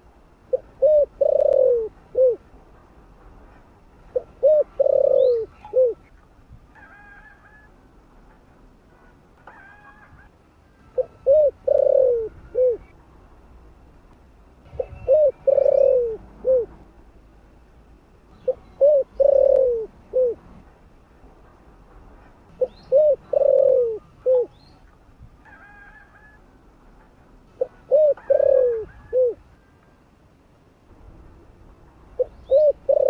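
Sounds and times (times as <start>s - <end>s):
dove cooing: 0.5s - 2.4s, 4.1s - 6.1s, 10.9s - 12.9s, 14.8s - 16.8s, 18.4s - 20.5s, 22.6s - 24.6s, 27.6s - 29.7s, 32.2s - 33.0s.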